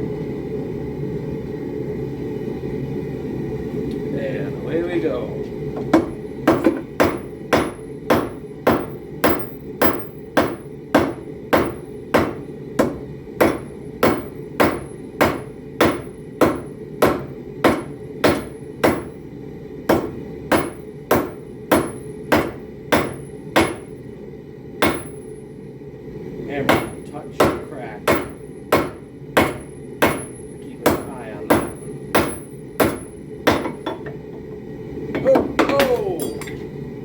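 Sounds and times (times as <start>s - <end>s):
hammer striking metal on anvil: 5.8s - 19.2s, 19.9s - 24.0s, 24.8s - 25.4s, 26.7s - 34.5s, 35.2s - 36.6s.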